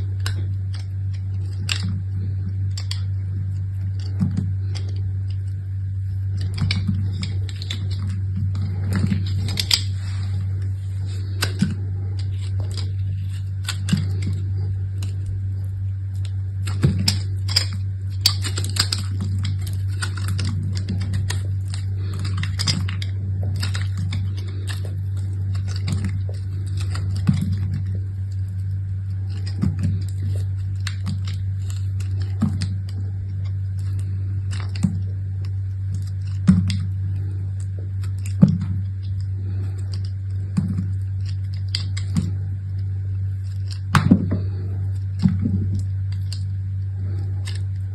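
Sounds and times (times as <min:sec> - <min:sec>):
steady low hum: 0:00.0 - 0:47.9.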